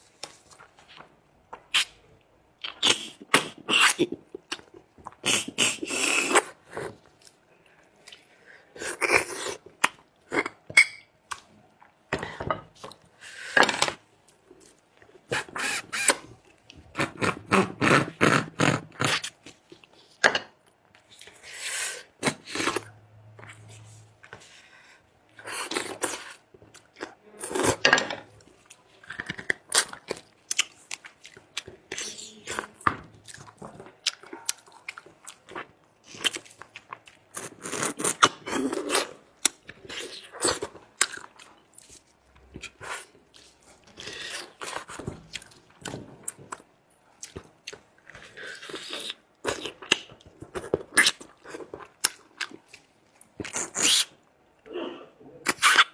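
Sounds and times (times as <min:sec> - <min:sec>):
chewing and crunching: 0:25.4 - 0:54.0.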